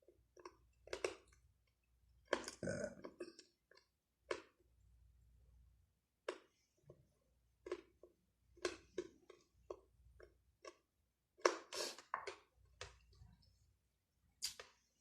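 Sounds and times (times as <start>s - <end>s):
person chewing with lip smacks: 14.4s - 14.8s.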